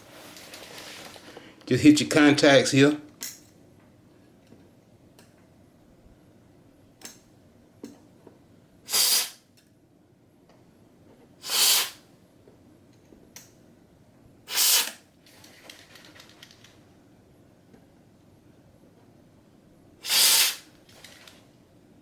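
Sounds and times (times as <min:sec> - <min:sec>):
aerosol spray hissing: 0:08.9 - 0:09.4, 0:11.4 - 0:12.0, 0:14.5 - 0:15.0, 0:20.0 - 0:20.7.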